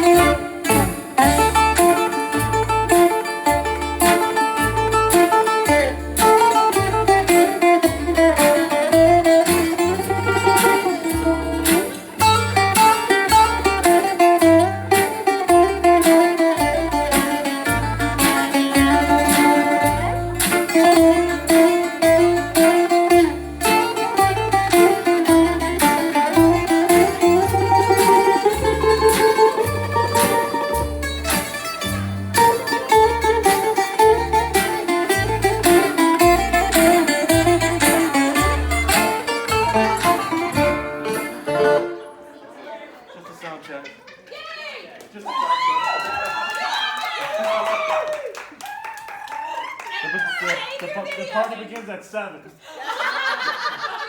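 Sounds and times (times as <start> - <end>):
low bass beat: 0.0 - 41.7
bouzouki plucked melody: 0.0 - 42.6.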